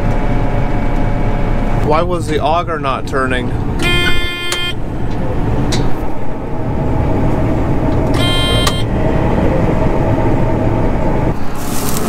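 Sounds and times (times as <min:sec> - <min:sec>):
combine harvester drone: 0:00.0 - 0:12.0
electronic warning beep: 0:03.8 - 0:04.8, 0:08.1 - 0:08.9.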